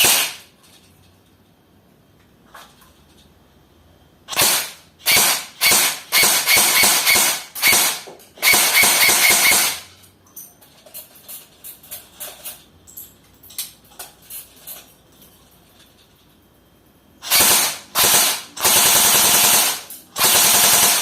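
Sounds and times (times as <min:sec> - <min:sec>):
airsoft rifle firing bursts: 0:00.0 - 0:00.4, 0:04.3 - 0:09.9, 0:17.2 - 0:21.0.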